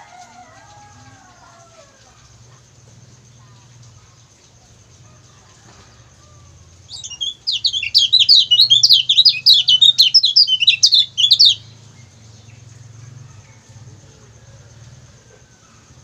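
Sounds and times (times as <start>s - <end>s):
bird chattering calls: 6.9s - 11.7s.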